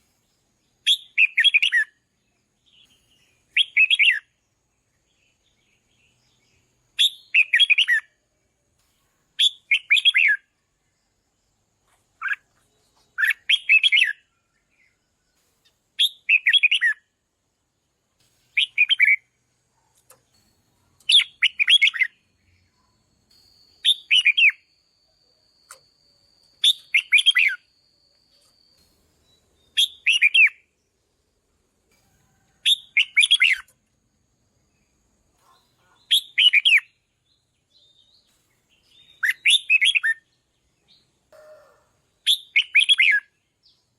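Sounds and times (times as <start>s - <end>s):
bird singing warbled phrases: 0.6s - 8.2s, 9.4s - 11.2s, 11.8s - 15.1s, 16.0s - 17.1s, 18.6s - 20.4s, 21.0s - 23.1s, 23.8s - 24.7s, 25.7s - 31.0s, 32.7s - 33.8s, 34.6s - 43.9s.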